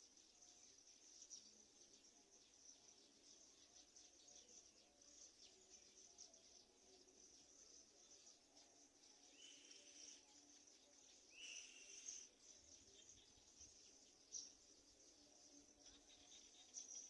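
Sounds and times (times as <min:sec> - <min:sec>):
short bird calls: 0:11.3 - 0:12.3.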